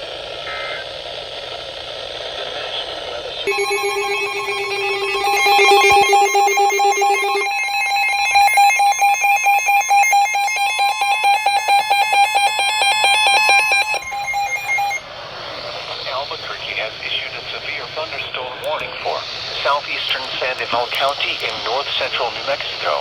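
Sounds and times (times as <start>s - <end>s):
electronic alert tone: 3.5s - 11.9s
fast pulsing beeps: 3.5s - 15.0s.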